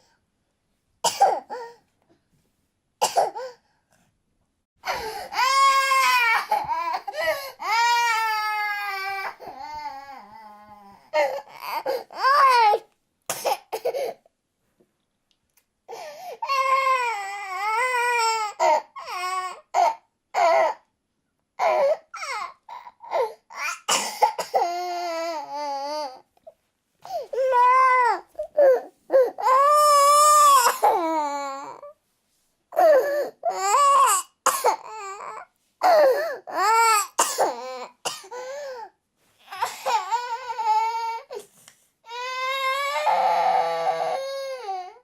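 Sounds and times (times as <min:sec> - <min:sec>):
child coughing: 0:01.0 - 0:01.5, 0:03.0 - 0:03.6, 0:13.3 - 0:14.2, 0:23.7 - 0:24.7, 0:34.4 - 0:34.9, 0:37.1 - 0:38.4.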